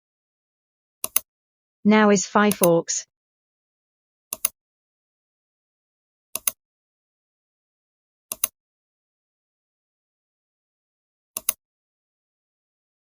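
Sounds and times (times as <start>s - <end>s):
computer mouse double clicking: 11.4s - 11.6s.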